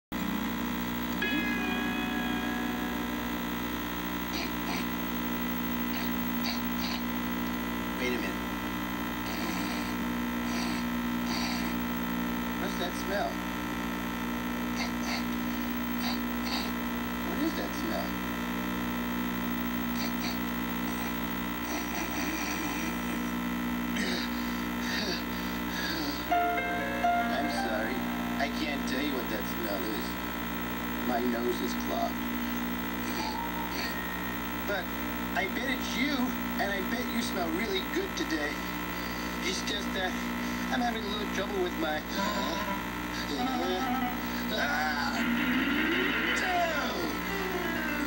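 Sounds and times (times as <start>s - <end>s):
electrical hum: 0.1s - 48.0s
brief high tone: 1.2s - 4.6s, 26.3s - 29.3s, 33.0s - 35.4s, 42.2s - 48.0s
faint breathy voice-like sounds: 24.0s - 26.3s.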